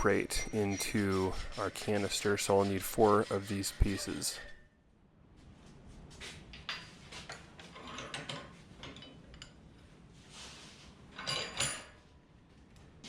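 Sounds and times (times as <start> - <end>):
hacksaw cutting metal rod: 0.3 - 4.5.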